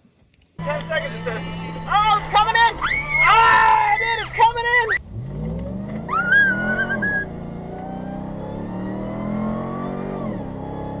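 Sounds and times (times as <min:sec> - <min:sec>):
high wavering tone: 0:00.6 - 0:04.4
off-road vehicle engine revving: 0:00.6 - 0:11.0.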